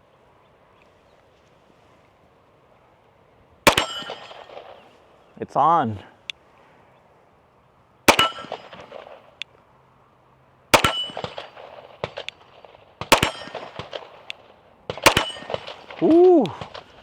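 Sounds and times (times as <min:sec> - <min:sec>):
bullet clanging on steel target: 0:03.7 - 0:04.7, 0:10.8 - 0:12.4, 0:13.1 - 0:14.4, 0:15.0 - 0:16.8
pistol shots: 0:03.7 - 0:04.9, 0:08.1 - 0:09.4, 0:10.7 - 0:17.0.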